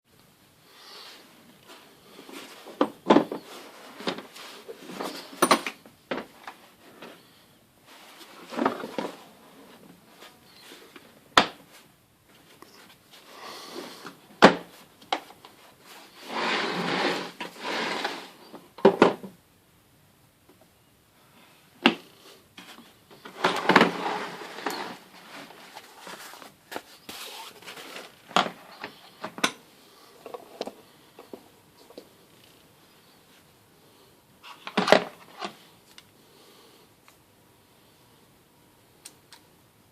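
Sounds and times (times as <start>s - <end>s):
rustling and sliding: 0.8s - 5.5s, 6.1s - 18.7s, 22.2s - 29.4s.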